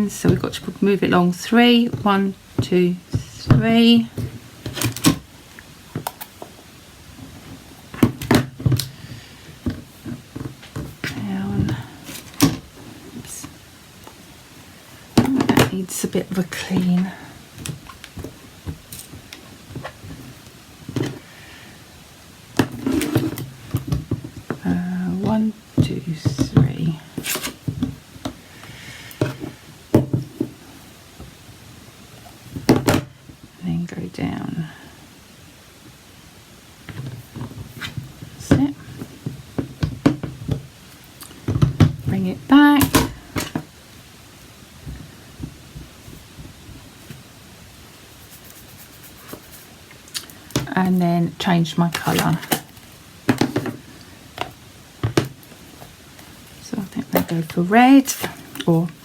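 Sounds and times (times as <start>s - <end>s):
faint steady hiss: 0.0s - 59.0s
soft dull bumps: 44.8s - 47.3s
paper rustling: 48.1s - 49.8s.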